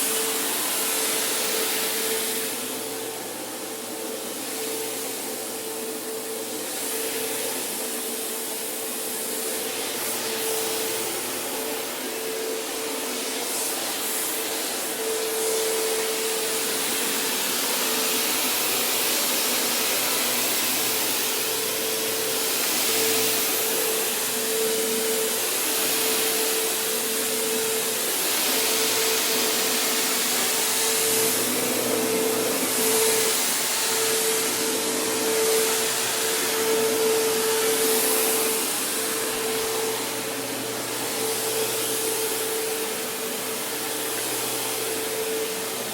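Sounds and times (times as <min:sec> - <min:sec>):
vacuum cleaner running: 0:00.0 - 0:45.9.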